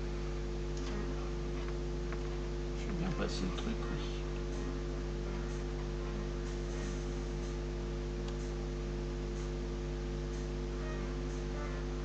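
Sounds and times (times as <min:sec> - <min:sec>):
electrical mains hum: 0:00.0 - 0:12.0.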